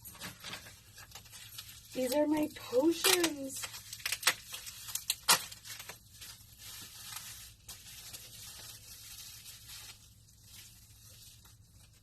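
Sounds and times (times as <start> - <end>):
packaging rustling: 0.0 - 12.0.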